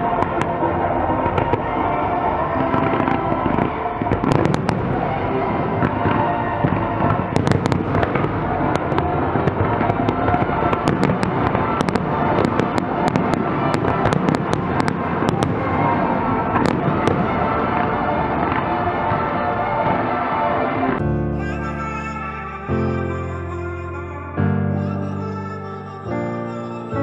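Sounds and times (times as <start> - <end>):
music playing: 0.0 - 27.0
fireworks crackling pops: 3.0 - 17.8.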